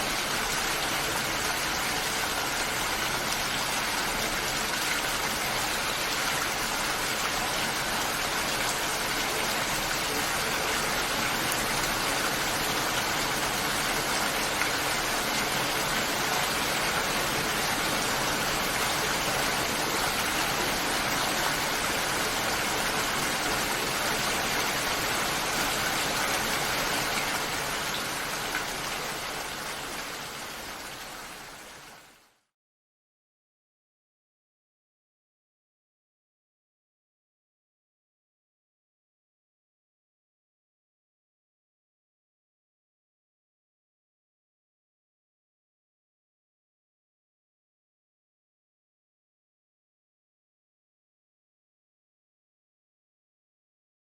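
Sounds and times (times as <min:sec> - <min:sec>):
rain falling on leaves: 0:00.0 - 0:32.5.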